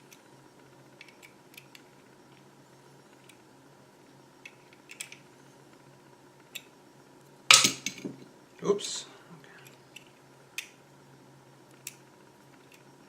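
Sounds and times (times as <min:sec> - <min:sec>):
plastic parts clicking: 0:04.4 - 0:05.2.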